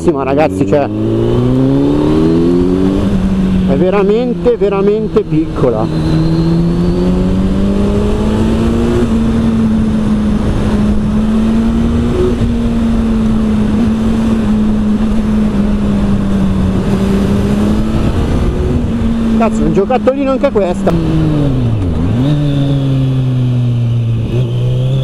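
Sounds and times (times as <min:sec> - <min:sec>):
motorcycle engine pulling steadily: 0:00.0 - 0:25.0
wind rush: 0:05.2 - 0:24.3.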